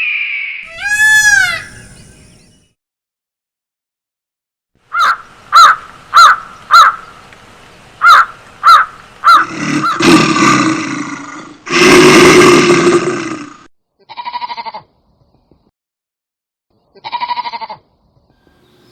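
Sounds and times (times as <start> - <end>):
animal calling: 0.6 - 2.6, 8.0 - 10.4.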